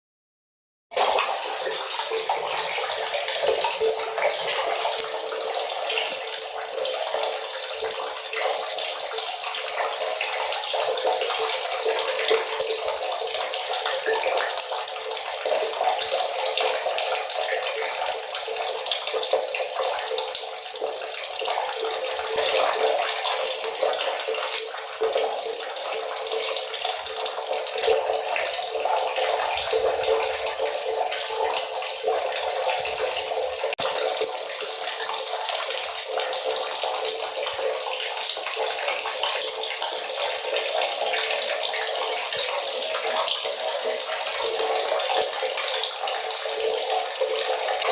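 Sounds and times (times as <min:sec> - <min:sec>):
tap water running and splashing: 0:00.9 - 0:47.9.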